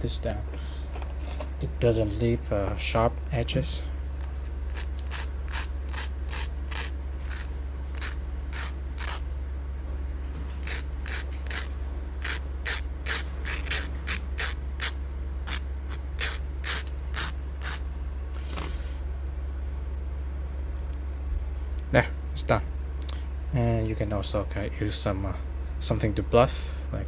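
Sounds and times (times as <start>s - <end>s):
steady low hum: 0.0s - 27.0s
metal file rasping: 4.7s - 9.2s, 10.6s - 17.8s.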